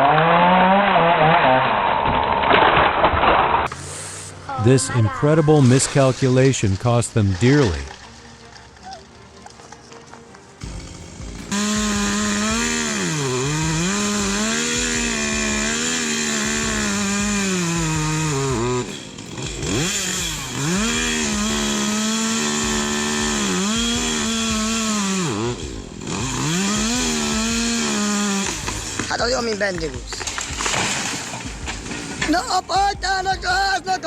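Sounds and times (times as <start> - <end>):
chainsaw running at high revs: 0.0 - 2.7, 10.6 - 34.0.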